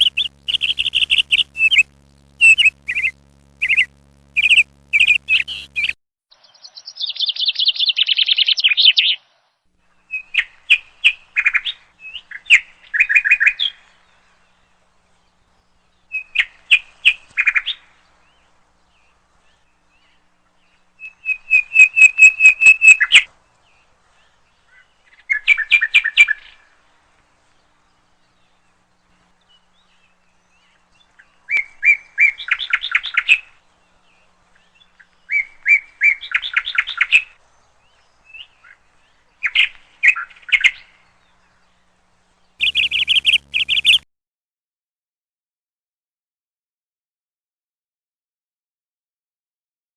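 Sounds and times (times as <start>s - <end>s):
songbird trilling and chirping: 0.0s - 5.9s, 42.6s - 44.0s.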